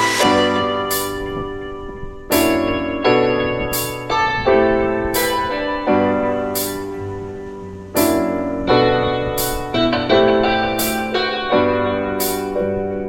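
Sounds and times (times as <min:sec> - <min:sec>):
bright percussive accent: 0:00.0 - 0:01.6
piano chords: 0:00.0 - 0:13.0.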